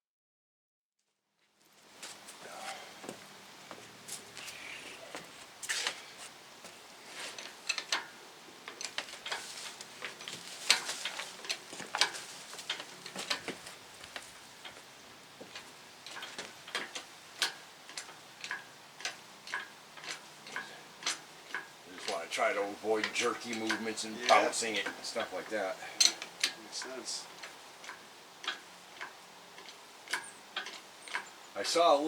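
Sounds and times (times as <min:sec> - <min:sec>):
sharp clicks and knocks: 0:07.3 - 0:14.8, 0:15.4 - 0:31.3.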